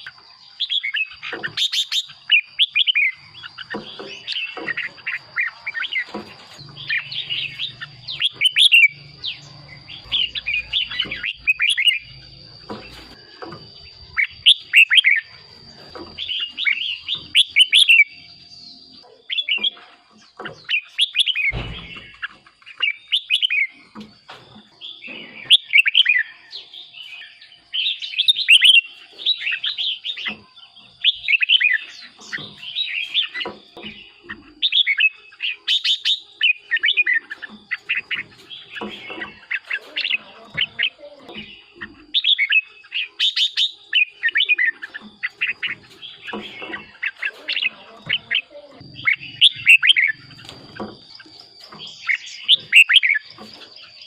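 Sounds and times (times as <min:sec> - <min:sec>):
birds singing warbling phrases: 0:00.0 - 0:54.0.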